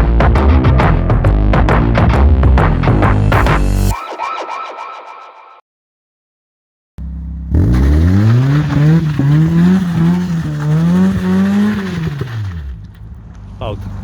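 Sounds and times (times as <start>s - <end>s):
car engine revving hard: 7.5s - 12.8s.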